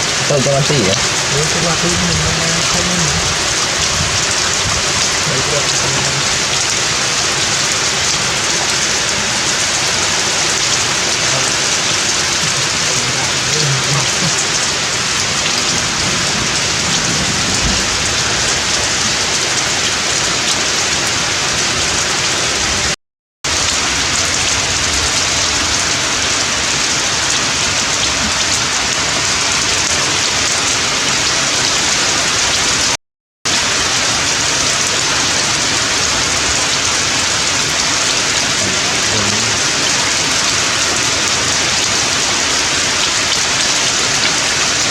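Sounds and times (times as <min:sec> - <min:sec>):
heavy rain falling: 0:00.0 - 0:44.9.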